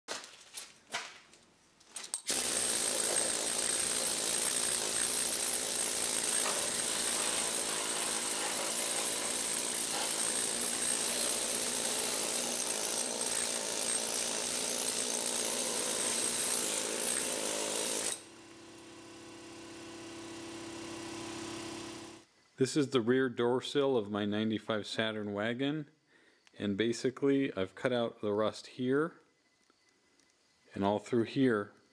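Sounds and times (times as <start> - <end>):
power tool cutting sheet metal: 2.2 - 22.2.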